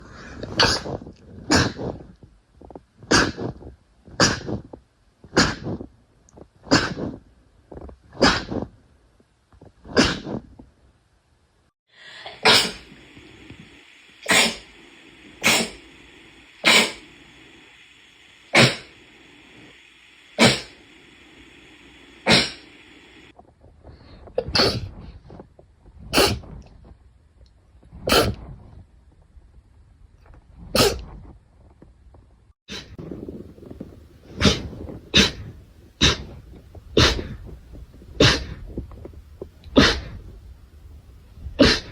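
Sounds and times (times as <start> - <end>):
sharp sneezes: 6.7 - 7.1, 10.0 - 10.3, 12.4 - 12.8, 14.2 - 14.7, 15.4 - 15.8, 16.6 - 17.0, 18.5 - 18.9, 20.4 - 20.8, 22.2 - 22.7, 24.4 - 24.9, 26.1 - 26.5, 28.1 - 28.4, 30.8 - 31.1, 34.4 - 36.4, 37.0 - 37.4, 38.2 - 38.6, 39.8 - 40.2, 41.6 - 41.9
steady high hum: 11.9 - 23.3.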